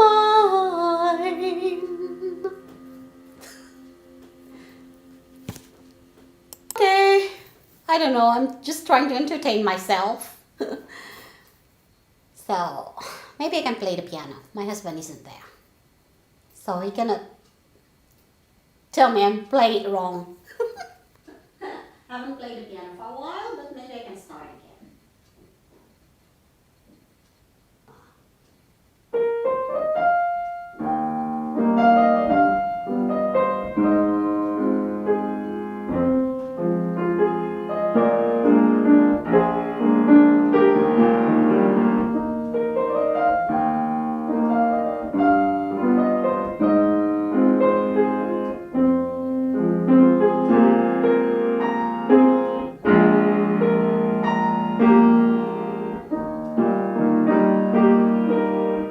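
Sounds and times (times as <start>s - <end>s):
piano melody over chords: 0.0s - 6.6s, 29.1s - 58.9s.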